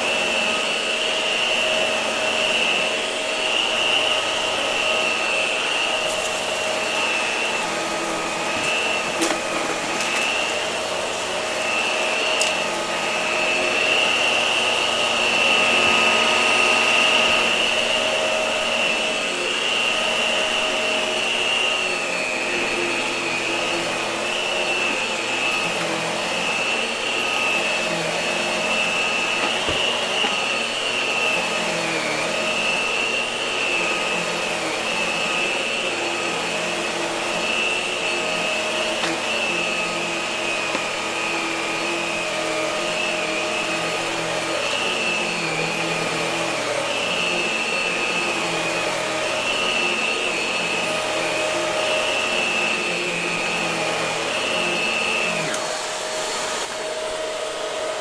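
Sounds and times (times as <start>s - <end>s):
vacuum cleaner running: 0.0s - 58.0s.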